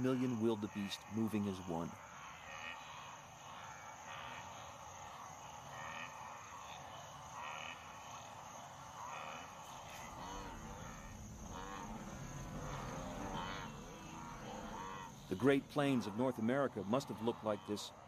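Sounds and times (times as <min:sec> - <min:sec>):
herd grunting and calling: 0:00.0 - 0:18.0
insect chirps: 0:00.0 - 0:18.0.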